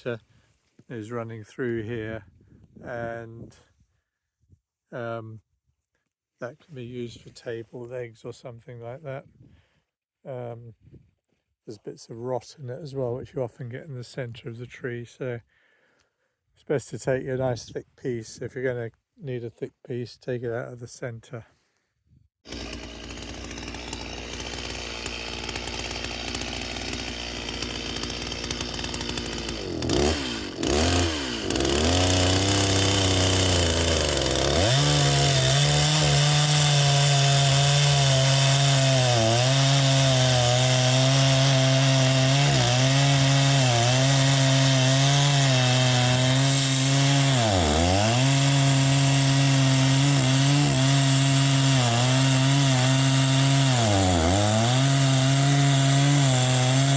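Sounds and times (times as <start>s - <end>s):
chainsaw revving and cutting wood: 22.4s - 56.9s.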